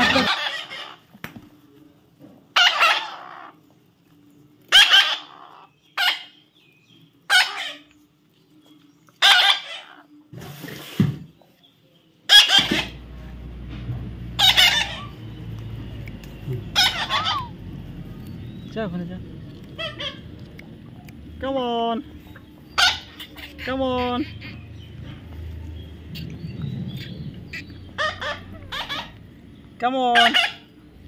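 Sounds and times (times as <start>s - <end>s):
parrot giving harsh calls: 0.0s - 1.1s, 2.5s - 3.6s, 4.7s - 6.4s, 7.3s - 7.8s, 9.2s - 10.1s, 12.3s - 13.0s, 14.4s - 15.2s, 16.7s - 17.6s, 19.8s - 20.4s, 22.7s - 25.0s, 26.1s - 29.2s, 30.1s - 30.8s
low steady hum: 12.6s - 31.0s.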